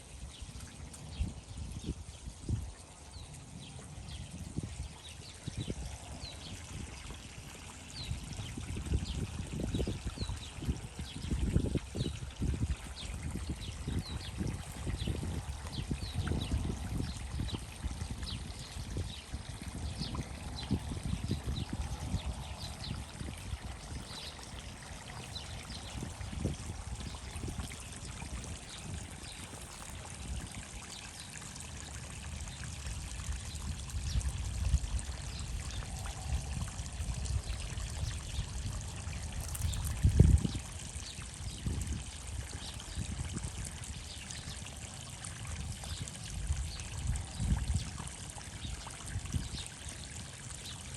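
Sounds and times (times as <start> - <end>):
water trickling: 0.0 - 50.9.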